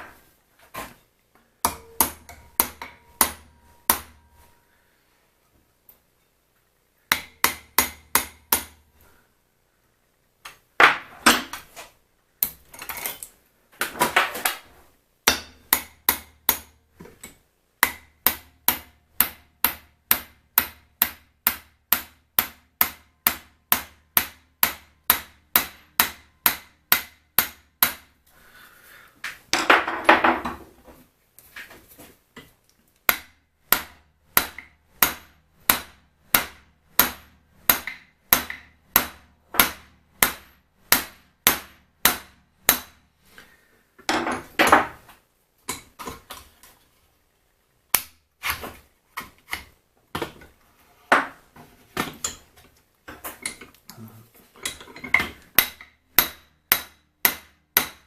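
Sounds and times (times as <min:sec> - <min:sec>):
hammer striking a pin: 0:01.6 - 0:04.6, 0:07.1 - 0:08.8, 0:15.2 - 0:28.1, 0:33.1 - 0:43.0, 0:54.6 - 0:58.0.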